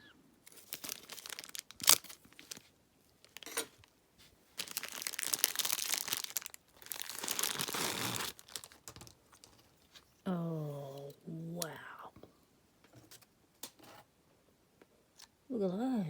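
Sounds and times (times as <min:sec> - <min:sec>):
plastic packaging crinkling and tearing: 0:00.5 - 0:03.9, 0:04.5 - 0:10.0.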